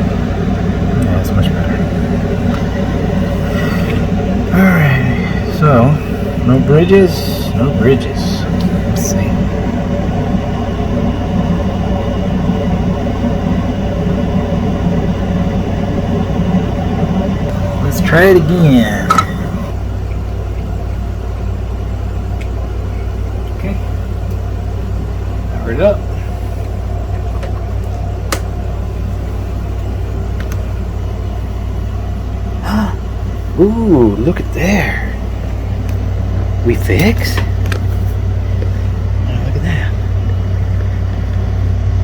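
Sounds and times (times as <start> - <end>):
steady low hum and rumble: 0.0 - 42.0.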